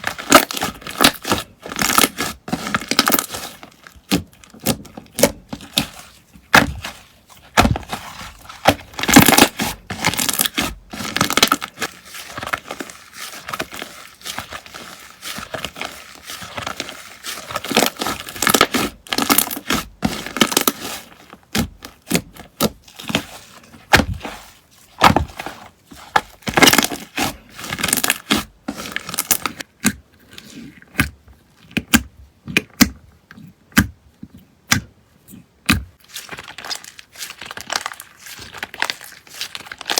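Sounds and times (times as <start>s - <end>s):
slime crackling and popping: 0.0s - 6.9s, 7.5s - 23.3s, 26.4s - 29.6s, 36.0s - 39.9s.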